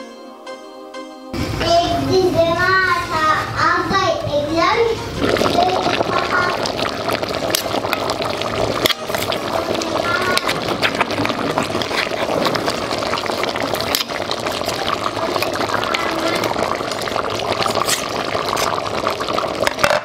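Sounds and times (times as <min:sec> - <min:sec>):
water hissing and bubbling: 0:05.0 - 0:19.9
sharp crackles: 0:05.3 - 0:19.8.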